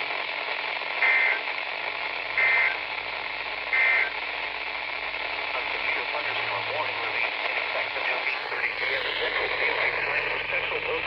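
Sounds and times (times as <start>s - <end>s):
radio static: 0.4s - 11.0s
buzzy data bursts: 8.3s - 11.0s.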